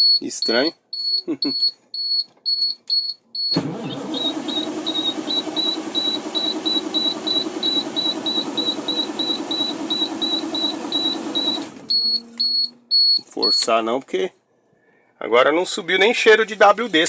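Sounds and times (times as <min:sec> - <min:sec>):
warning buzzer beeping: 0:03.4 - 0:13.6
diesel engine cranking: 0:03.5 - 0:12.5.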